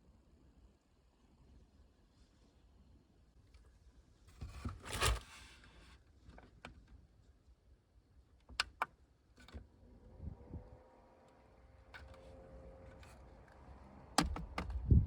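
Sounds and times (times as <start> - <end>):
rustling handling noise: 4.3 - 5.7.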